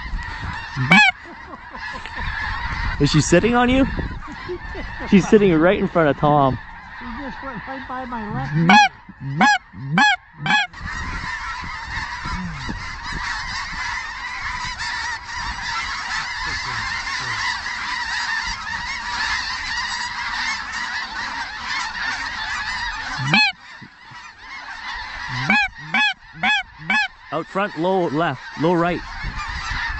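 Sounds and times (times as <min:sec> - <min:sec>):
wind rumbling on microphone: 0:00.0 - 0:20.4, 0:28.4 - 0:29.9
geese honking: 0:00.0 - 0:29.9.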